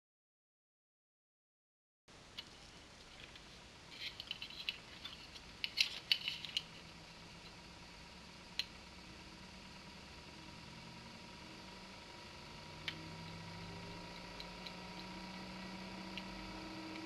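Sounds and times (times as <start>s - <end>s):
computer fan whine: 2.1s - 17.0s
low hum: 2.1s - 17.0s
light clicks and rattles: 2.4s - 6.8s.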